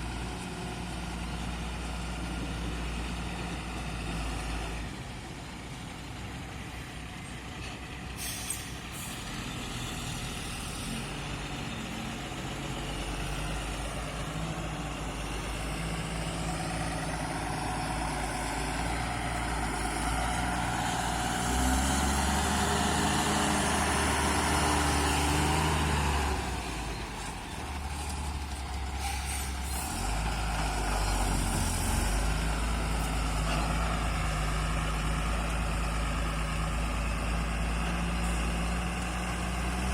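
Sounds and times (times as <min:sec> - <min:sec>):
diesel engine under load: 0:00.0 - 0:39.9
short air hisses: 0:28.9 - 0:30.2.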